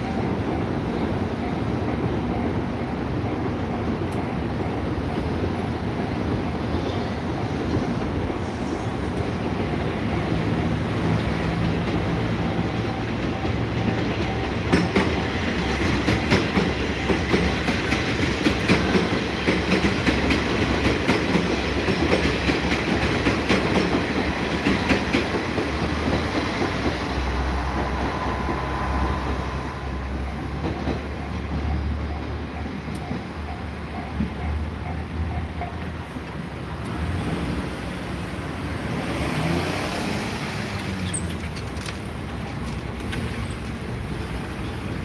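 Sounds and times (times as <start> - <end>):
train rumble: 0.0 - 45.0
train wheels clattering: 7.3 - 37.7.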